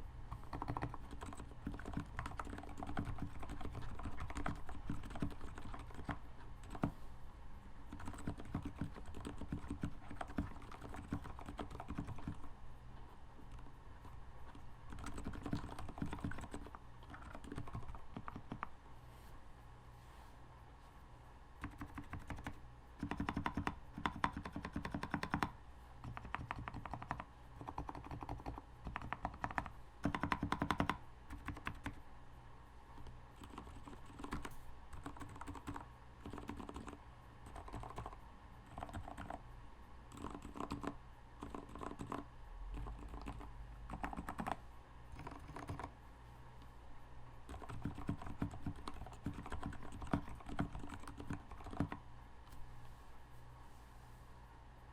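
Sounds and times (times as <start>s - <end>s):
mechanical keyboard typing: 0.3s - 7.0s, 7.9s - 12.5s, 13.5s - 18.7s, 21.6s - 32.0s, 33.0s - 39.4s, 40.1s - 45.9s, 47.4s - 52.0s.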